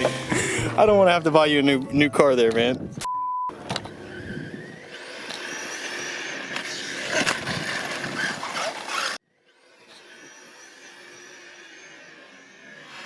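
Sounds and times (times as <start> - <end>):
rc car motor whining: 3.5 - 13.0.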